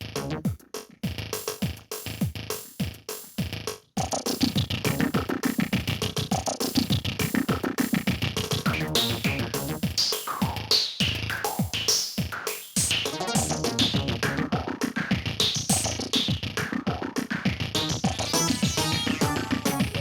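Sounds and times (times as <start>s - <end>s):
electronic ringtone melody: 17.8s - 20.0s.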